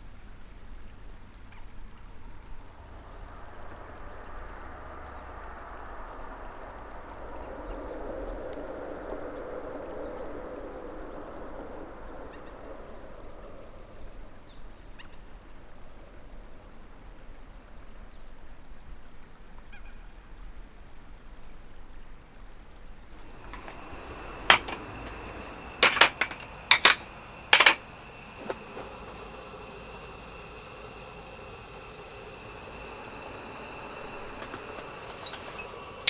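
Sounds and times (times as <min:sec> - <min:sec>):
wind rumble on microphone: 0:02.6 - 0:14.2
strong wind gusting: 0:23.2 - 0:36.0.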